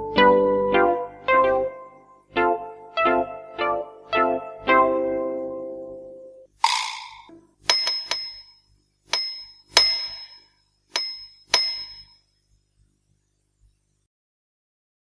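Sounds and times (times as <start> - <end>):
small bell dinging: 7.0 - 12.3.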